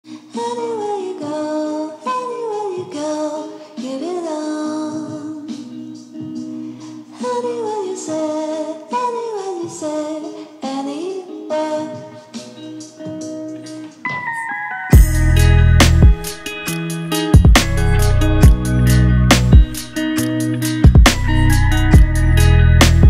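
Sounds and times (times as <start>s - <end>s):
woman singing: 0.1s - 13.2s
sustained instrumental notes: 13.5s - 23.0s.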